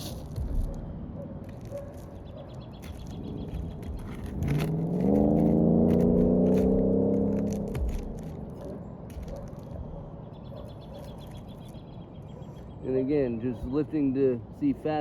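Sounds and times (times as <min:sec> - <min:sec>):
clicks and scraping on roof shingles: 0:01.4 - 0:09.8
engine running: 0:02.9 - 0:09.8.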